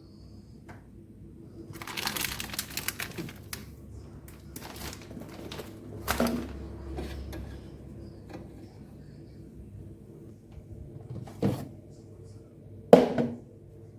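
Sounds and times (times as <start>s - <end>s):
household items clicking and rattling: 1.8s - 3.7s, 4.3s - 7.5s.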